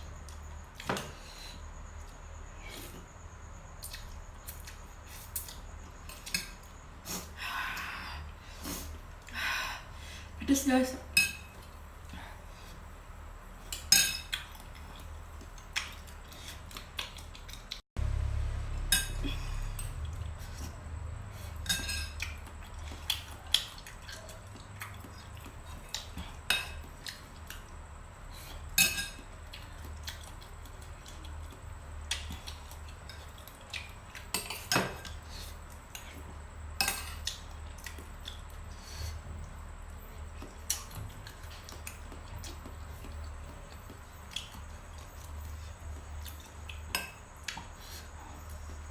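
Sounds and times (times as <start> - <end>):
cutlery clinking against a dish: 11.2 - 11.6, 13.7 - 14.5, 21.6 - 22.4, 26.0 - 27.2, 28.7 - 29.3, 34.3 - 35.2, 36.8 - 37.5, 46.8 - 47.2
low hum: 18.0 - 22.9.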